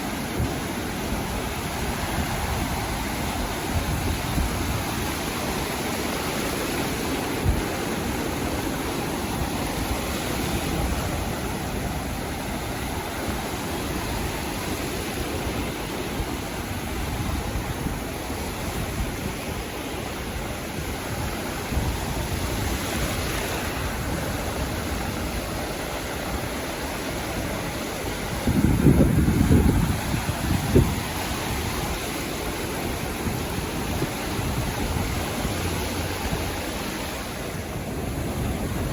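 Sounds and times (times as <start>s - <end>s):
sea waves washing onto shore: 0.0s - 38.9s.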